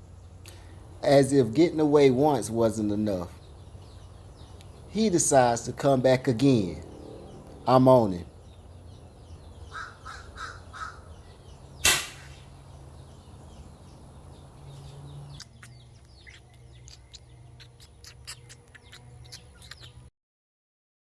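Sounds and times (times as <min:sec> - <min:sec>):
faint bird chirps: 0:06.4 - 0:20.1
crow cawing: 0:09.6 - 0:11.2
loud gunshot: 0:11.8 - 0:12.5.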